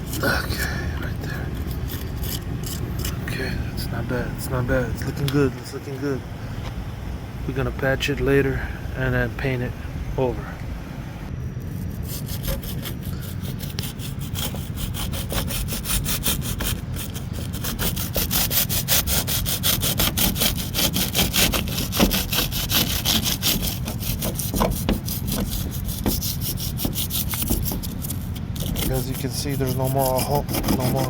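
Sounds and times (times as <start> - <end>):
hand sawing strokes: 0.0 - 6.2, 11.6 - 31.0.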